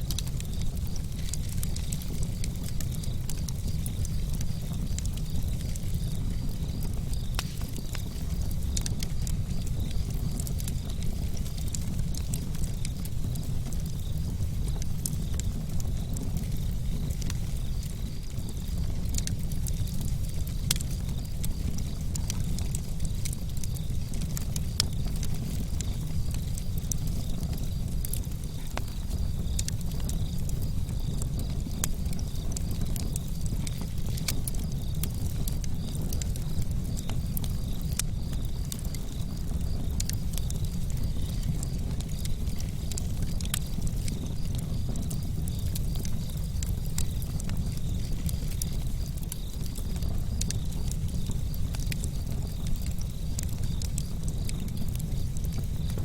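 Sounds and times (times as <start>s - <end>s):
campfire crackling and popping: 0.0s - 56.0s
low fire rumble: 0.0s - 56.0s.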